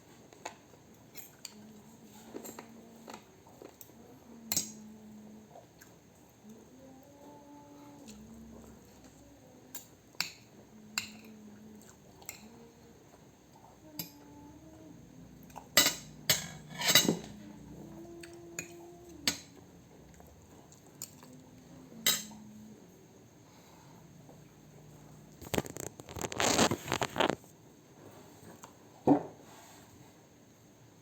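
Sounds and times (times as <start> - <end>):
cutlery clinking on a plate: 15.7 - 17.4, 22.0 - 22.4.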